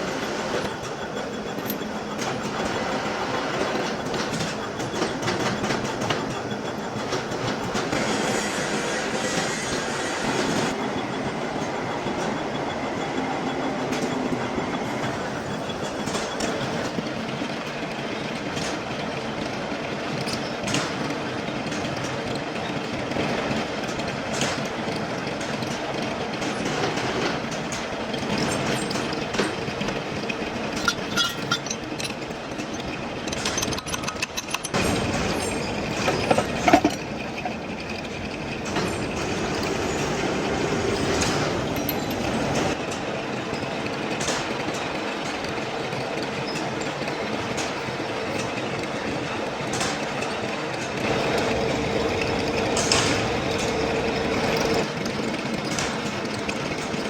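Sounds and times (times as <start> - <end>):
heavy machinery humming: 0.0 - 17.1, 26.2 - 44.3, 48.2 - 57.0
metallic clicks and knocks: 27.5 - 37.6.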